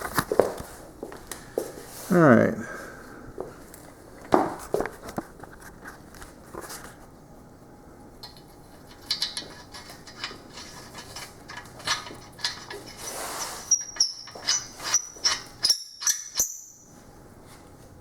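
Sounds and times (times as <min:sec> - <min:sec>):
metal knocks and clinks: 0:08.2 - 0:16.9.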